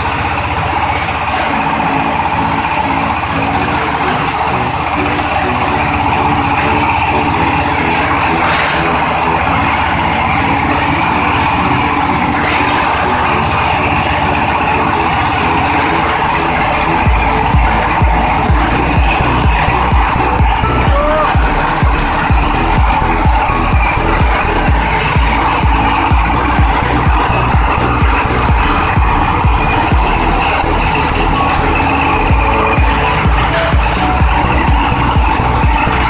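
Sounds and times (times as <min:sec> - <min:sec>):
machine whirring: 0:00.0 - 0:36.0
heavy low thumps: 0:17.1 - 0:35.9.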